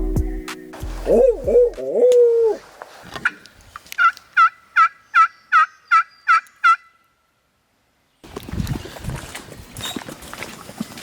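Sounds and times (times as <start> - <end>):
wild turkey yelping: 4.0 - 7.0.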